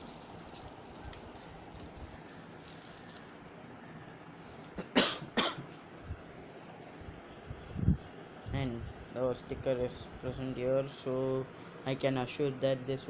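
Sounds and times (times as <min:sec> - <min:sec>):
person coughing: 0:04.8 - 0:05.8.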